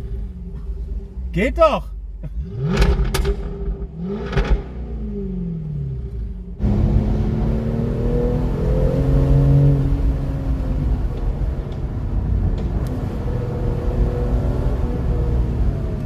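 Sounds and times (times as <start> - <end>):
low rumble: 0.0 - 6.6
car engine accelerating: 0.0 - 16.0.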